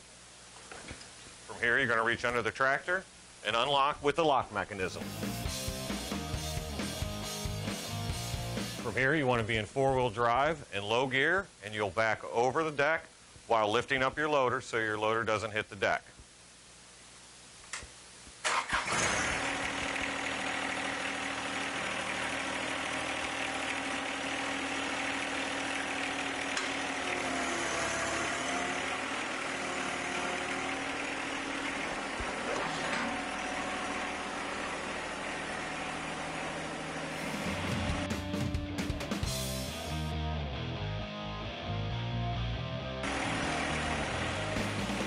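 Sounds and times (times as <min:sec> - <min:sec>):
tractor diesel engine running: 0:18.5 - 0:38.5, 0:43.0 - 0:45.0.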